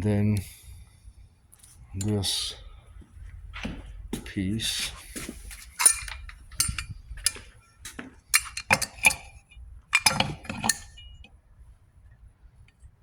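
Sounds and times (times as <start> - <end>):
metal parts clinking: 5.6 - 11.3.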